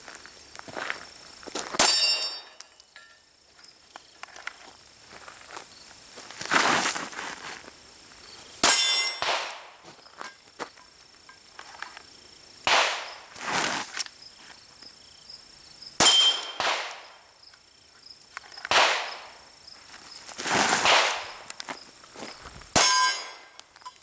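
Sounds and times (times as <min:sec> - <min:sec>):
metallic clang of steel targets: 0:01.8 - 0:03.3, 0:08.6 - 0:10.4, 0:16.0 - 0:17.3, 0:20.7 - 0:21.5, 0:22.7 - 0:24.0
pistol shots: 0:08.6 - 0:09.7, 0:12.7 - 0:13.2, 0:16.0 - 0:17.2, 0:18.7 - 0:19.4, 0:20.8 - 0:21.4.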